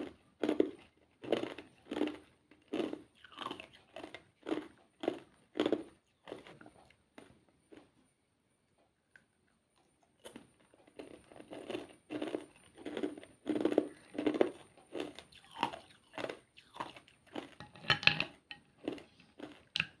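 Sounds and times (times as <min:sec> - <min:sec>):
ice being chewed: 0:00.0 - 0:08.1, 0:09.1 - 0:20.0.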